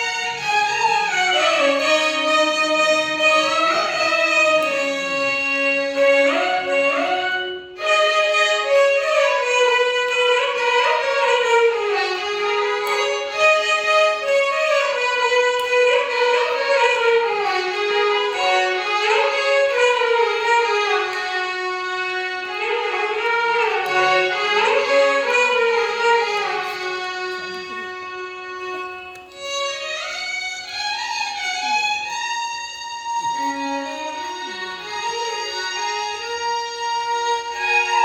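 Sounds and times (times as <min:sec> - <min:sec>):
violin ensemble playing: 0:00.0 - 0:38.0.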